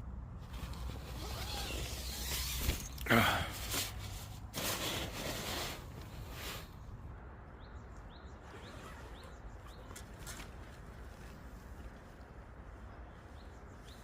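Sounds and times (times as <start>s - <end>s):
rustling: 0.4s - 6.8s.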